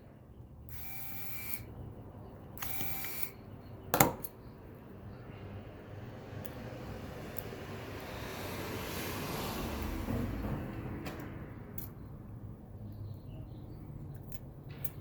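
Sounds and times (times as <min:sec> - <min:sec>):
small tool mechanical whirs: 0:00.7 - 0:01.7, 0:02.6 - 0:03.4.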